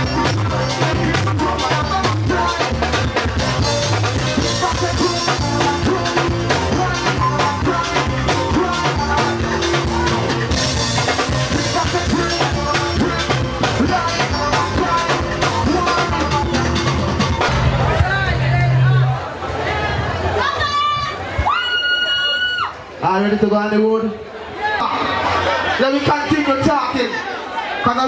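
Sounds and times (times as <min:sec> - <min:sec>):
upbeat music with drum beat: 0:00.0 - 0:18.2
bass line: 0:00.0 - 0:20.5.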